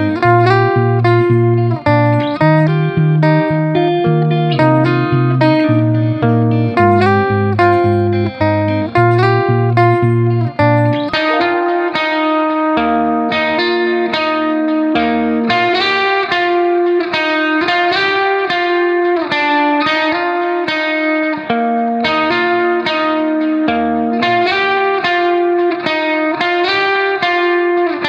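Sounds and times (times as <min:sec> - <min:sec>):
plucked guitar melody: 0:00.0 - 0:28.0.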